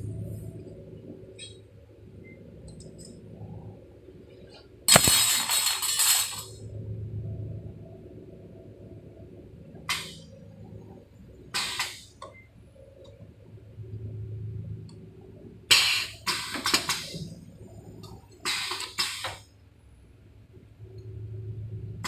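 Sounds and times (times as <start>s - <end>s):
low motor hum: 0.0s - 4.9s, 6.5s - 11.5s, 12.3s - 15.7s, 19.9s - 22.0s
sharp metallic clanks: 4.9s - 6.5s.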